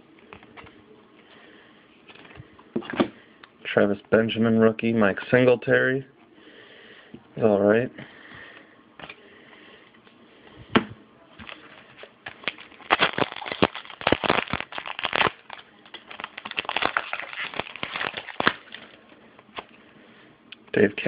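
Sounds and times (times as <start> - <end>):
wrapper crackling and crinkling: 11.4 - 19.7.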